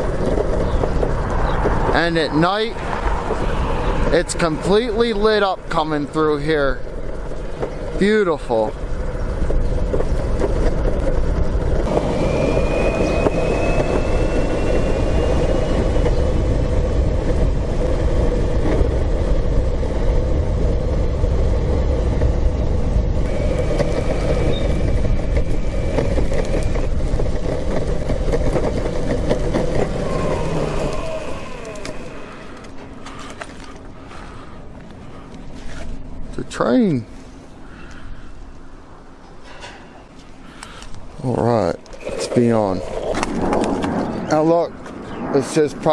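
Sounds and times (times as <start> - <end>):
skateboard wheels rumbling on pavement: 0.0 - 37.6, 41.0 - 45.9
rushing air: 1.1 - 7.4, 11.5 - 36.3, 42.0 - 45.9
electric motor whine: 11.8 - 16.5, 23.2 - 27.5, 29.3 - 32.8.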